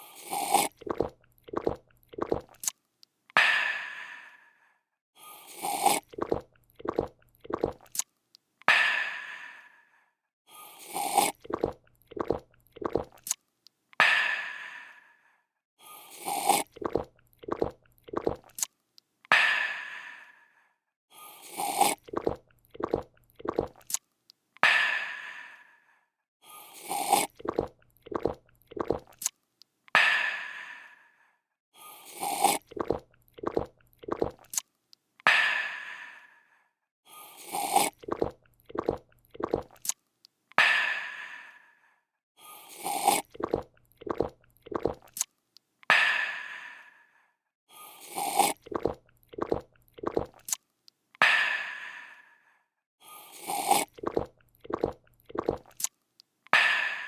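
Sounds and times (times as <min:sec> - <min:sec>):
person gulping: 0:00.0 - 0:02.7, 0:05.5 - 0:08.0, 0:10.9 - 0:13.4, 0:16.2 - 0:18.7, 0:21.5 - 0:24.0, 0:26.8 - 0:29.3, 0:32.2 - 0:34.6, 0:37.5 - 0:39.9, 0:42.8 - 0:45.2, 0:48.1 - 0:50.6, 0:53.4 - 0:55.9
person slurping a drink: 0:00.0 - 0:02.8, 0:05.3 - 0:08.1, 0:10.6 - 0:13.4, 0:16.0 - 0:18.7, 0:21.3 - 0:24.0, 0:26.6 - 0:29.3, 0:31.9 - 0:34.6, 0:37.2 - 0:40.0, 0:42.6 - 0:45.3, 0:47.8 - 0:50.6, 0:53.1 - 0:55.9.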